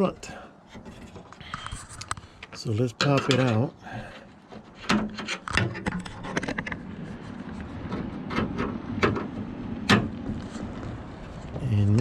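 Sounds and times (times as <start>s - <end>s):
rubbing and scraping: 3.1s - 11.6s
latch clicks and knocks: 7.9s - 10.2s.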